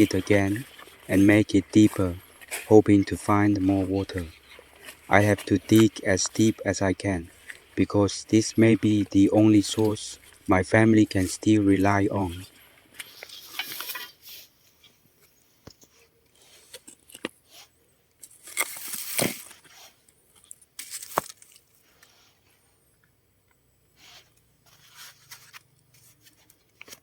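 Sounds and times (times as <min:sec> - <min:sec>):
digging tool scraping soil and stones: 0:00.0 - 0:22.5, 0:24.0 - 0:27.0.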